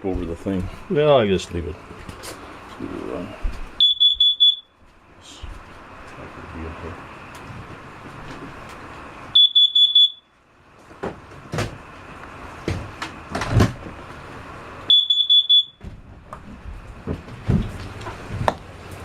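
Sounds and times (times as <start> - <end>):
high-pitched alarm beeps: 3.8 - 4.7, 9.4 - 10.3, 14.9 - 15.8.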